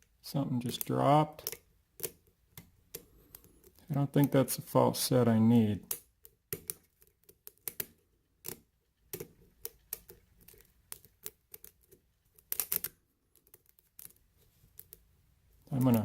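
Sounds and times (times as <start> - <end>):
lock pick clicking in lock: 12.4 - 14.2.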